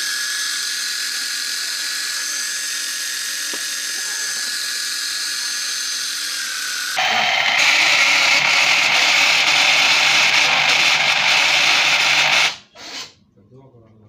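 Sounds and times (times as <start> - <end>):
printer mechanical grinding: 7.0 - 12.6.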